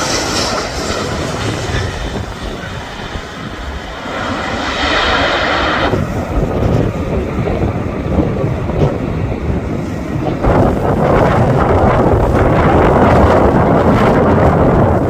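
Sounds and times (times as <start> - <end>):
gusty wind buffeting microphone: 0.0 - 15.0
jet airliner engines rumbling: 0.0 - 15.0.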